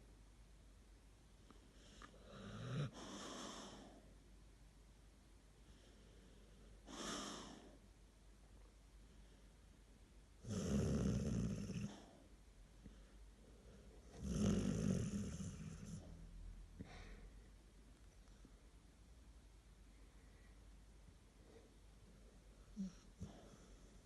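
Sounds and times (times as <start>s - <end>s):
soft breath: 1.4s - 4.2s, 5.6s - 7.9s, 8.9s - 9.8s, 11.9s - 14.2s, 15.8s - 17.6s, 19.8s - 24.0s
rattling snores: 10.4s - 12.0s, 14.2s - 16.1s.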